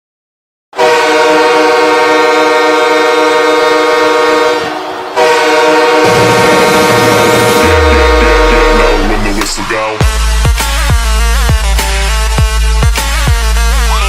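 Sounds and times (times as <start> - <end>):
hockey goal horn blasting: 0.8 - 9.4
bass-heavy electronic music: 6.1 - 14.0.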